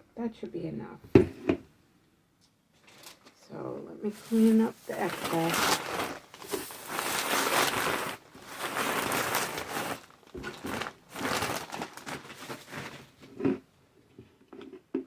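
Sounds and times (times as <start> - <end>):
shredded paper grass crinkling: 4.1 - 13.2.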